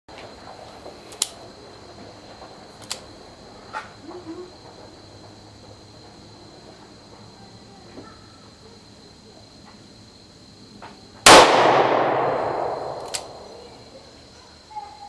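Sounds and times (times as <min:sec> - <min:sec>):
revolver gunshot with echo: 0:11.3 - 0:13.7.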